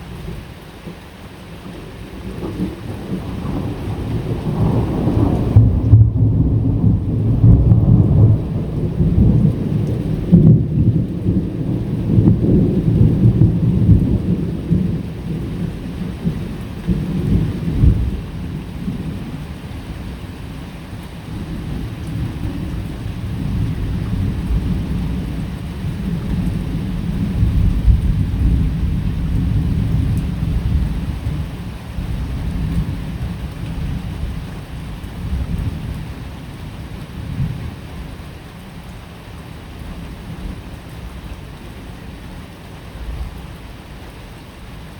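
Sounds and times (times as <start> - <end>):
steady rain: 0.0 - 44.9
thunder rumbling: 1.9 - 20.2, 21.3 - 38.2.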